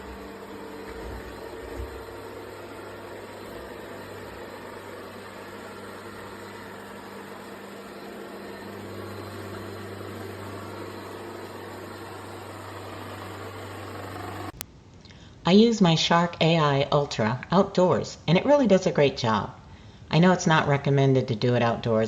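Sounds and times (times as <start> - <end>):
robot vacuum motor hum: 0.0 - 14.6.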